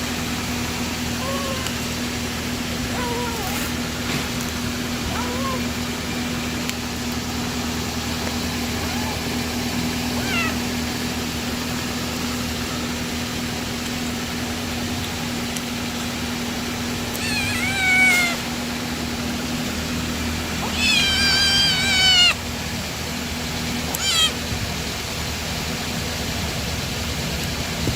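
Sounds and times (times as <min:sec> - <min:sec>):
steady low hum: 0:00.0 - 0:27.9
cat meowing: 0:01.2 - 0:01.8, 0:02.8 - 0:03.8, 0:05.0 - 0:05.8, 0:08.6 - 0:09.4, 0:10.0 - 0:10.8, 0:17.1 - 0:18.6, 0:20.6 - 0:22.4, 0:23.9 - 0:24.5.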